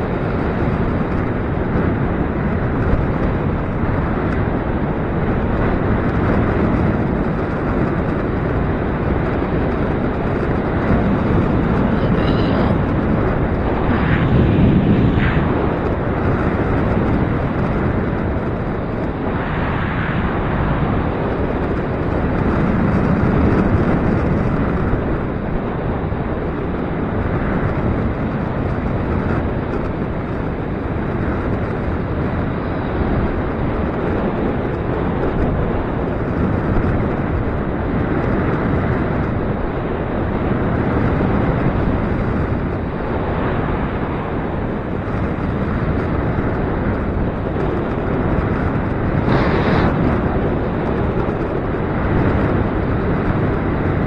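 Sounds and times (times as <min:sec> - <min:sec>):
wind buffeting microphone: 0:00.0 - 0:54.0.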